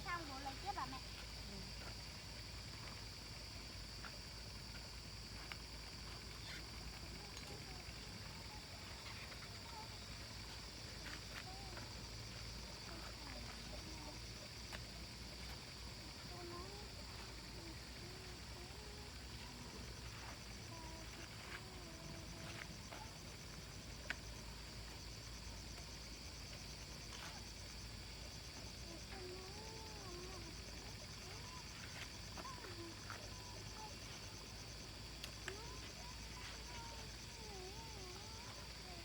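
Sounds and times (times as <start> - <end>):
insect chirring: 0.0 - 39.0.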